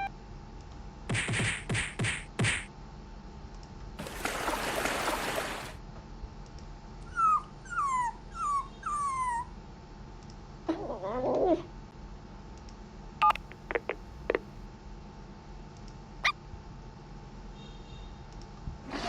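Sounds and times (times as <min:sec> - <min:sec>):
dog whimpering: 0:07.1 - 0:09.5, 0:10.7 - 0:11.7.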